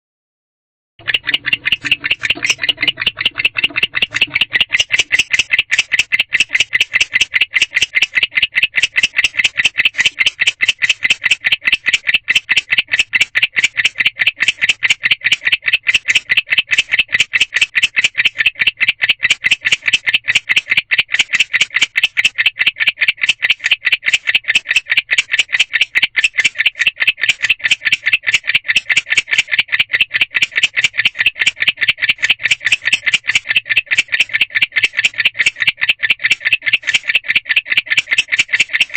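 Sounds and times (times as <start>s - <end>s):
barn owl chirping: 1.0s - 15.4s.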